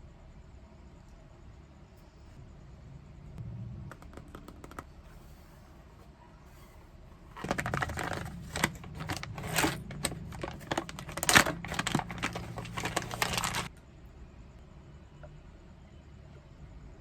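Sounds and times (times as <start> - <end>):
crinkling and sharp clicks: 3.9 - 13.8.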